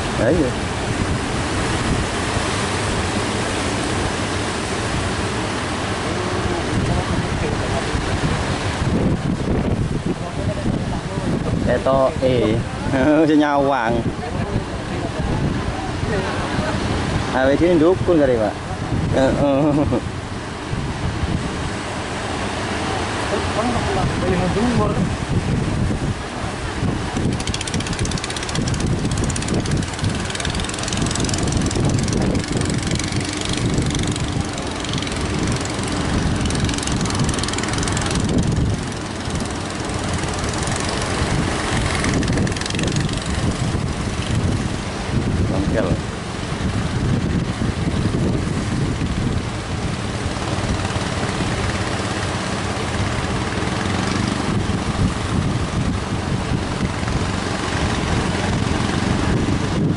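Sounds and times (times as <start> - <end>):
boat engine running: 0.0 - 59.9
surf: 0.0 - 59.9
wind: 0.0 - 59.9.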